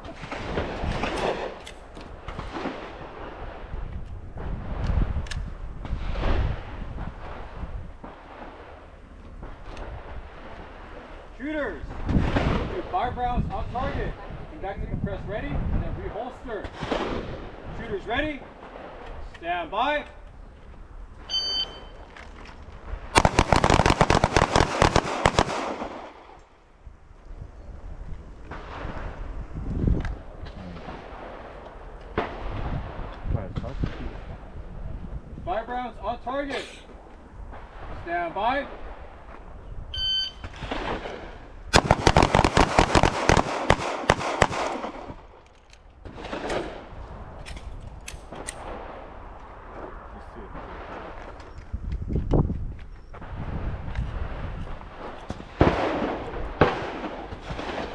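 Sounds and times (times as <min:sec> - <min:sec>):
electronic start beep: 0:21.3 - 0:22.0, 0:40.0 - 0:40.4
rapid handgun fire: 0:23.1 - 0:26.4, 0:40.6 - 0:45.3
handgun shots: 0:41.8 - 0:45.0.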